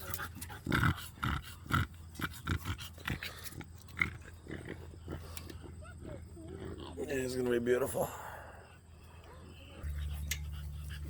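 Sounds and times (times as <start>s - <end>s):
puppies grunting and snuffling: 0.0s - 11.0s.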